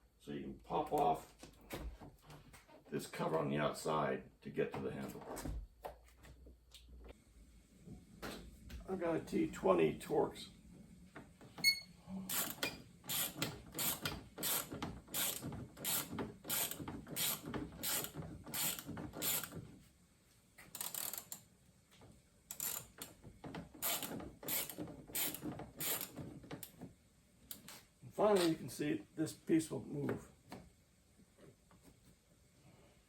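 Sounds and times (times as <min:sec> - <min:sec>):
ratchet clicking: 0:12.3 - 0:19.5, 0:20.8 - 0:21.4, 0:22.5 - 0:23.1, 0:23.8 - 0:26.2.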